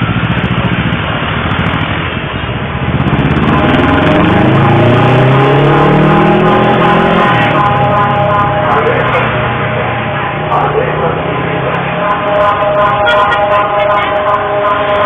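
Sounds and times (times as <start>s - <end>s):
vehicle engine revving: 0.0s - 15.0s
steady higher tones: 3.2s - 15.0s.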